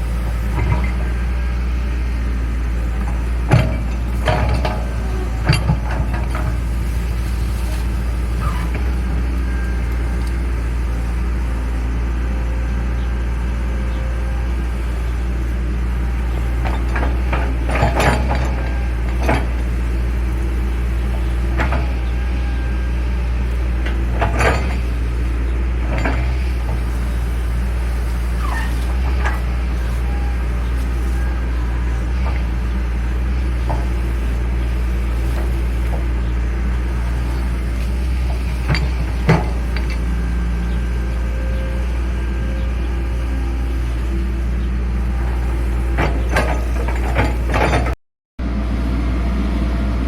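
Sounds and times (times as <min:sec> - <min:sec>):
diesel engine droning: 0:00.0 - 0:50.0
metallic clanks and knocks: 0:00.5 - 0:01.2, 0:03.0 - 0:07.8, 0:16.3 - 0:20.4, 0:21.0 - 0:22.6, 0:23.8 - 0:25.1, 0:25.8 - 0:27.1, 0:28.4 - 0:40.8, 0:45.9 - 0:48.0.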